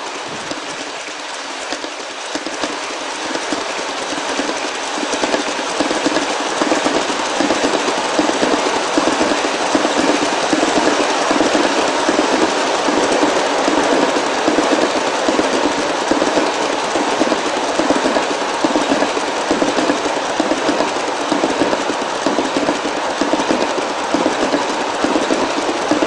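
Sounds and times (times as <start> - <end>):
model train wheels clattering: 0.0 - 26.0.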